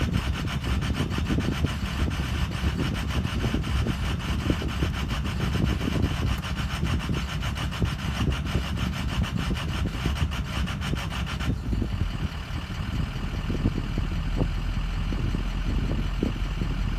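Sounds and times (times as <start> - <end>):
diesel engine idling roughly: 0.0 - 16.9.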